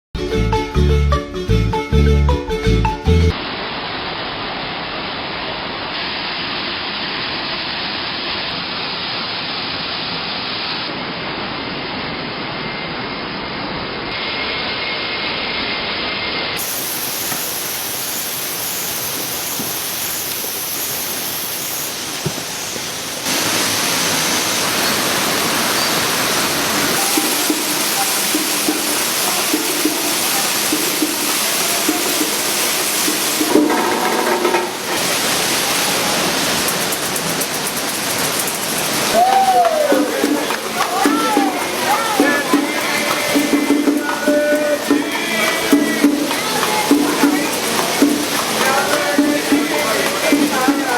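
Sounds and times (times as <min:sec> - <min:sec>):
waterfall rushing: 0:03.2 - 0:13.2, 0:16.5 - 0:50.9.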